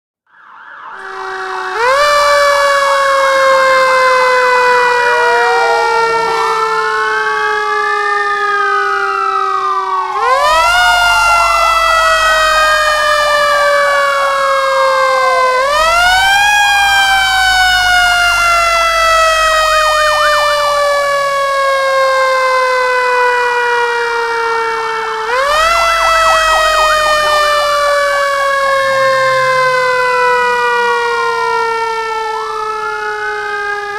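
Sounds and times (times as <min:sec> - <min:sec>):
fire truck siren wailing: 0:00.2 - 0:33.9
second siren tone: 0:04.6 - 0:07.2, 0:15.2 - 0:21.4, 0:25.3 - 0:31.1.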